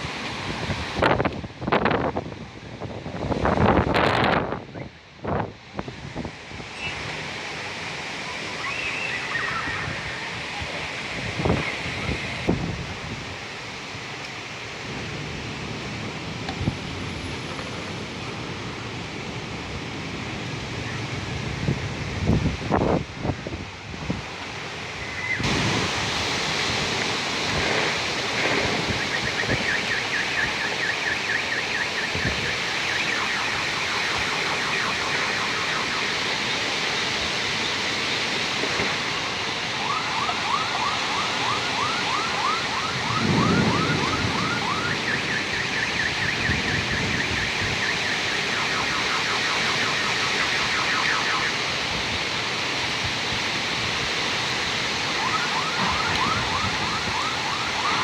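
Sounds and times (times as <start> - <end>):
rain falling: 0.0 - 58.0
car alarm chirping: 28.9 - 36.6, 39.9 - 51.6.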